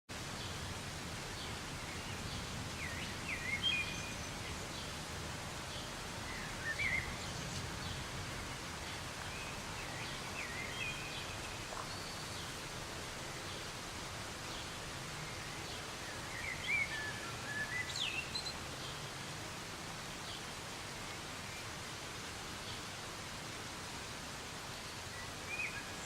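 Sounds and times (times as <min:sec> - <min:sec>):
soft rain hiss: 0:00.1 - 0:26.0
bird chirping: 0:01.4 - 0:04.9.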